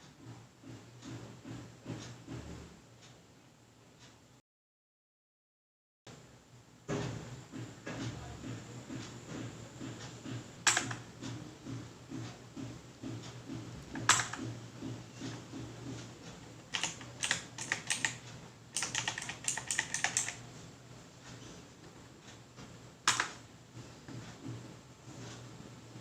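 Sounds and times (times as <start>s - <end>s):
clicky mechanical keyboard typing: 10.6s - 11.4s, 14.0s - 14.6s, 16.4s - 20.5s, 23.1s - 23.4s.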